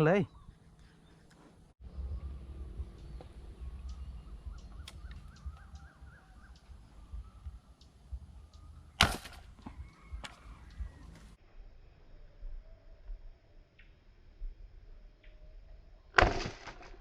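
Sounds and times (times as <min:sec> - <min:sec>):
low rumble: 0:01.8 - 0:15.2.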